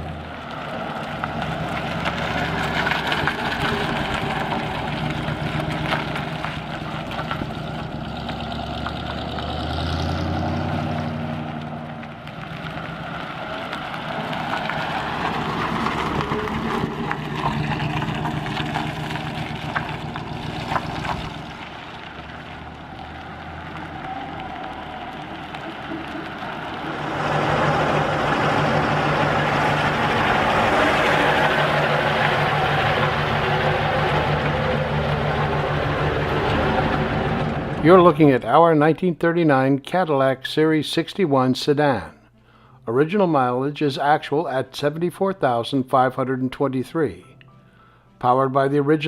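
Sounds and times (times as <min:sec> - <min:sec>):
car engine running: 0:00.0 - 0:38.3
steady rushing noise: 0:23.4 - 0:38.0.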